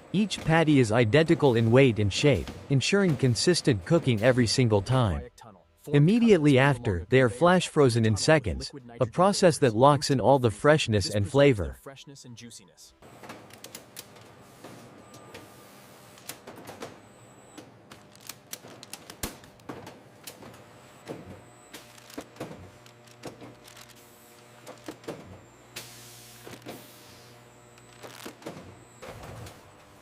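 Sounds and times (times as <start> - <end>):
machinery low hum: 0.0 - 10.0
machinery clicks and clanks: 0.1 - 5.1, 13.0 - 30.0.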